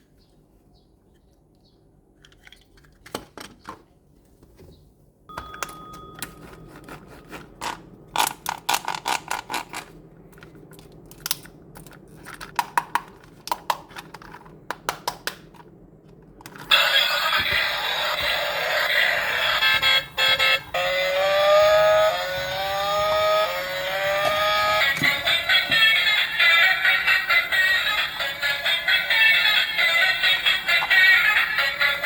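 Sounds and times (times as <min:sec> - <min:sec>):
loud buzzing electronic sound: 0:16.8 - 0:26.0.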